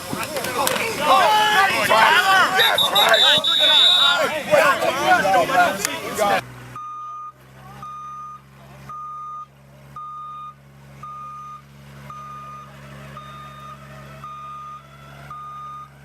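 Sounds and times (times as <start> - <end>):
low engine hum: 0.0 - 16.0
reversing alarm beeping: 2.3 - 4.3, 6.8 - 16.0.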